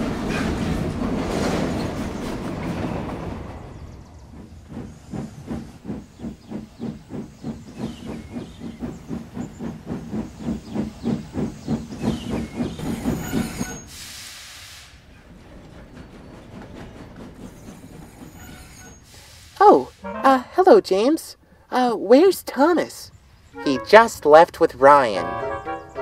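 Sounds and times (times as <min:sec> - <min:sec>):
steam locomotive chuffing: 0:00.0 - 0:20.8
steam hissing: 0:04.6 - 0:15.3, 0:17.4 - 0:20.2.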